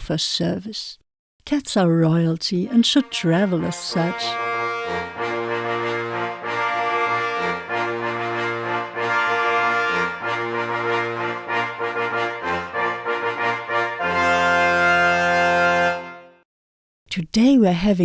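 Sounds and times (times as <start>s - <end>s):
jaunty brass tune: 2.7s - 16.4s.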